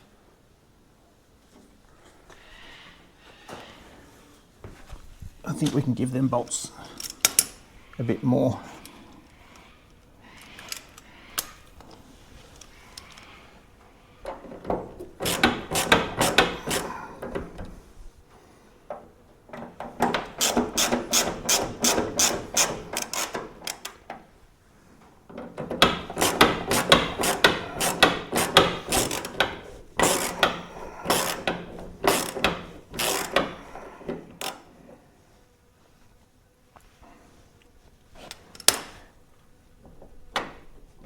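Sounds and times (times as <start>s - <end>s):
ratchet wrench clicking: 15.2s - 16.9s, 20.4s - 24.0s, 26.1s - 33.6s.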